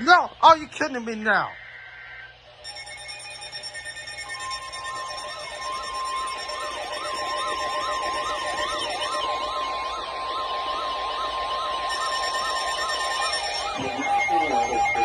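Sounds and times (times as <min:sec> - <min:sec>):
electronic siren wailing: 0:01.3 - 0:15.0
steady alert tone: 0:02.6 - 0:15.0.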